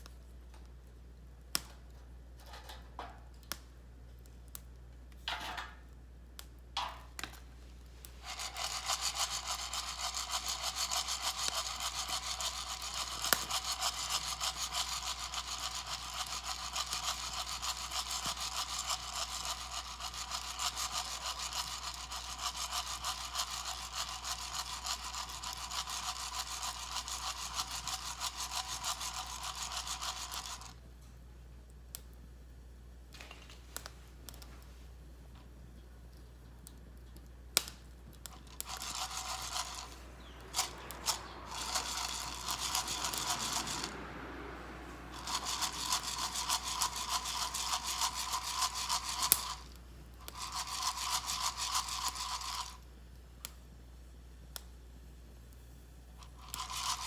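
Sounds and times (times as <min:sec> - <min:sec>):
fast steady rasping: 0:08.2 - 0:30.7, 0:38.2 - 0:52.8, 0:56.4 - 0:57.0.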